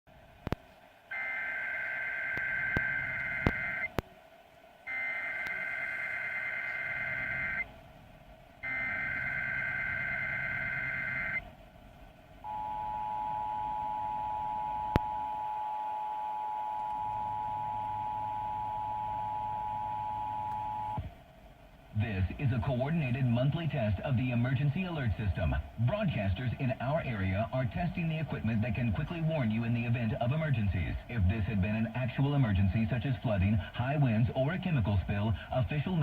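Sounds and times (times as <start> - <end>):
radio static clicks: 0.4 - 4.1, 4.9 - 7.7, 8.6 - 11.5, 22.0 - 36.0
screeching digital data tones: 1.1 - 3.9, 4.9 - 7.7, 8.6 - 11.4
two-tone attention signal: 4.9 - 7.6, 8.6 - 11.4, 12.5 - 21.0.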